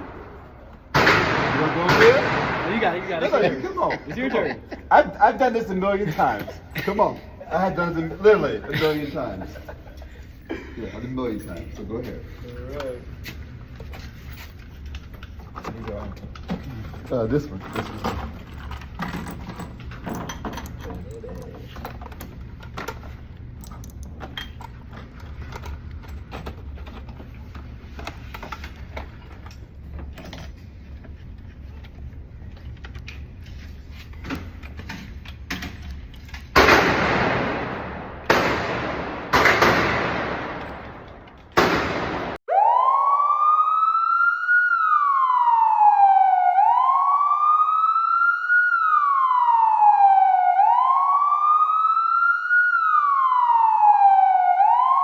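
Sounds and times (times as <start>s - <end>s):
gunshots: 0.0s - 3.6s, 36.5s - 42.4s
wailing siren: 42.4s - 55.0s.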